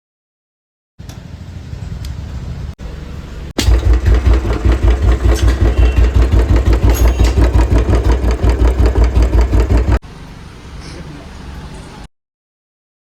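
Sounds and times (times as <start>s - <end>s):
motorcycle engine thumping: 3.6s - 10.0s.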